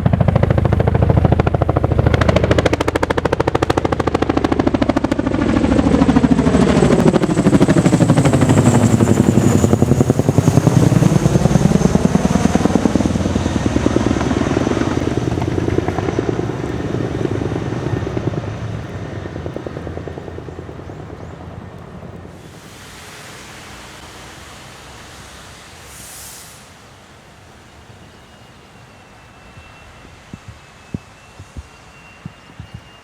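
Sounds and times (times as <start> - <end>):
helicopter blade chop: 0.0 - 19.8
brief hiss: 22.4 - 33.0.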